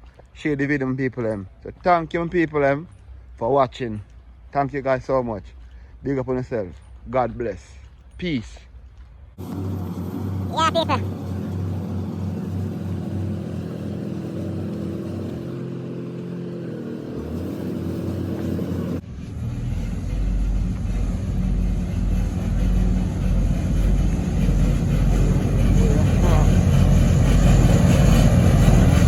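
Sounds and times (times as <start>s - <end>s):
deep engine rumble: 7.8s - 29.0s
engine humming: 8.9s - 29.0s.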